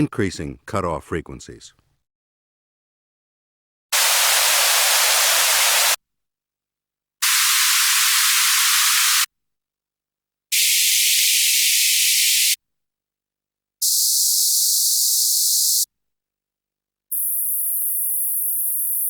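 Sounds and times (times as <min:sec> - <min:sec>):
high-pass filtered white noise bursts: 0:04.0 - 0:06.0.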